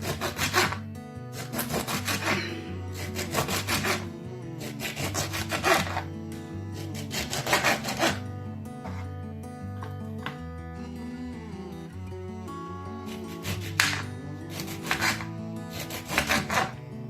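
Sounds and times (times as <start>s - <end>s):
rasping strokes on vegetables: 0.0s - 6.1s, 6.7s - 9.1s, 13.1s - 16.8s
background music: 0.0s - 17.0s.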